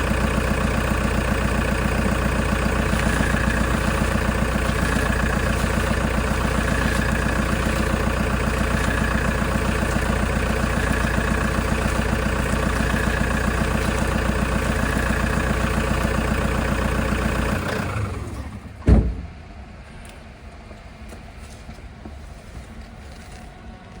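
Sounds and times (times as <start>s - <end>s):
van engine idling: 0.0s - 24.0s
loud thump: 18.8s - 19.4s.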